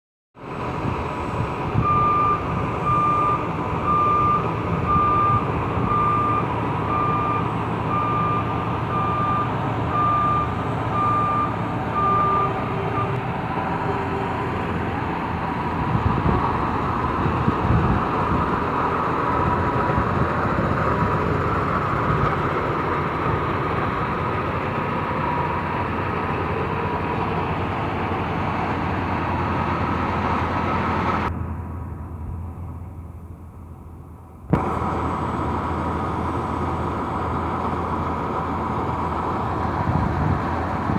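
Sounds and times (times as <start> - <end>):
diesel engine running: 0.4 - 40.9
reversing alarm beeping: 1.8 - 14.7.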